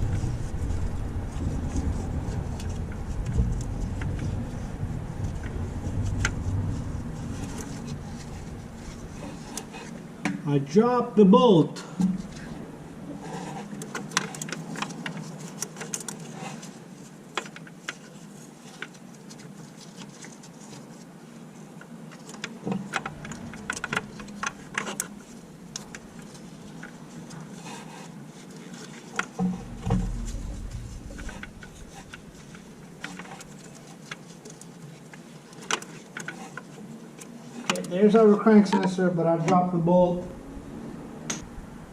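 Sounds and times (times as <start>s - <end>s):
steady low hum: 0.0s - 15.6s, 21.1s - 35.5s, 36.2s - 41.9s
dull thump: 3.2s - 4.2s, 29.4s - 32.3s.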